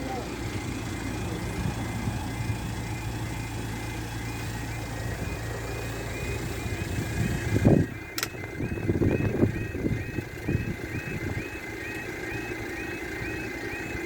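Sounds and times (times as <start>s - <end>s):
idling vehicles rumbling: 0.0s - 14.0s
level crossing alarm chirping: 0.8s - 14.0s
sharp click: 8.2s - 8.4s.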